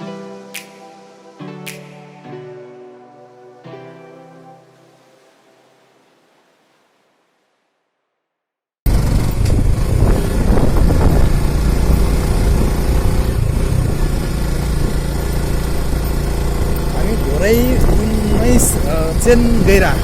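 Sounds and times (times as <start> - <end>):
music: 0.0 - 5.7
motorcycle engine rumbling: 8.9 - 20.0.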